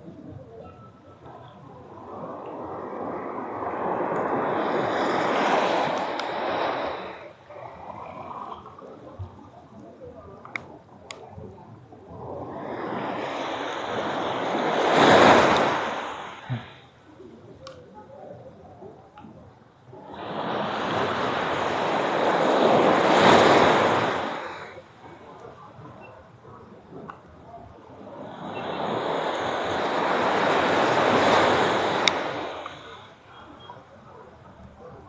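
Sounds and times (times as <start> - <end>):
waves breaking on beach: 0.0 - 35.0
faint clicks: 5.9 - 6.4, 8.4 - 11.6, 17.6 - 18.1, 25.3 - 27.8, 32.0 - 35.0.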